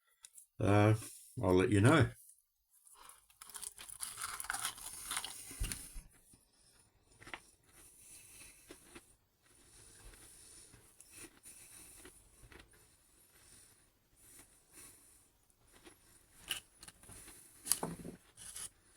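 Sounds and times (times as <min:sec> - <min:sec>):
person crunching and chewing: 0:03.0 - 0:05.9, 0:15.7 - 0:17.8.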